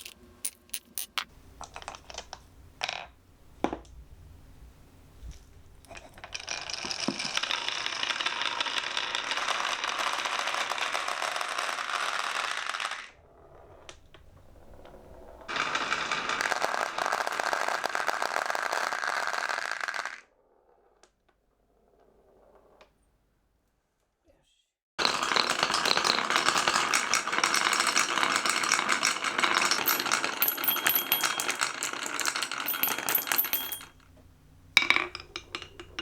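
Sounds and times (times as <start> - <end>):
marbles clattering down wooden run: 6.3 - 13.1, 15.5 - 20.2, 25.0 - 33.9.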